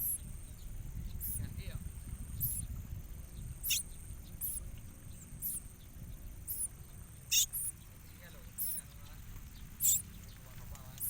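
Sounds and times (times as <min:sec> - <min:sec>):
high-pitched bird chirps: 0:00.0 - 0:00.2, 0:02.4 - 0:02.7, 0:03.6 - 0:04.6, 0:05.4 - 0:05.6, 0:06.5 - 0:06.7, 0:07.3 - 0:07.8, 0:08.6 - 0:08.8, 0:09.8 - 0:10.0.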